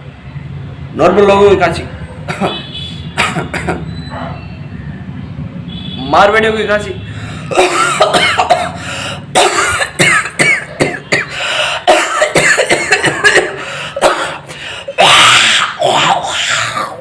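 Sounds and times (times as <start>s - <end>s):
man coughing and hacking: 2.3s - 3.8s, 7.4s - 17.0s
rasping throat clearing: 3.2s - 3.8s, 7.4s - 17.0s
strained pitched vocal sounds: 13.3s - 17.0s.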